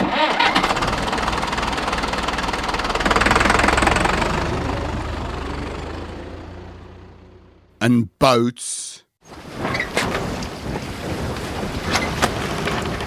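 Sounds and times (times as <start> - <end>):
tractor engine knocking: 0.0 - 6.4.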